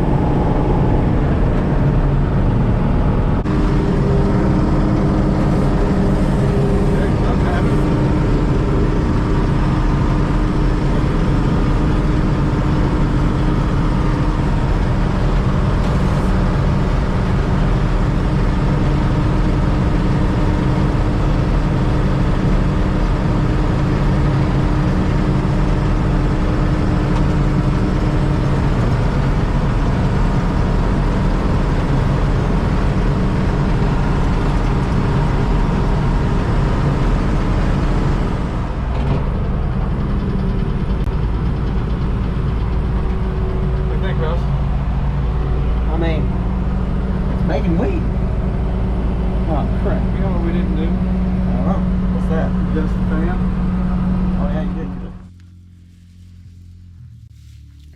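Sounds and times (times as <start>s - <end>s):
steady machine tone: 0.0s - 22.4s
combine harvester running: 0.0s - 57.9s.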